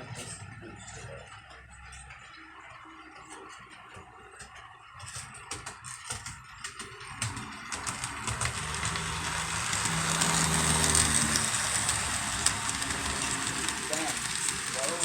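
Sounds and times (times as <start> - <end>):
model train wheels clicking: 6.9 - 15.0
model train motor hum: 7.5 - 15.0.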